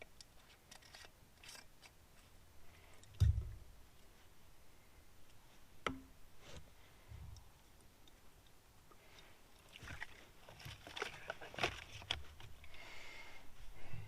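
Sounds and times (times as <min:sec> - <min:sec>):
low thump: 0:03.2 - 0:03.7.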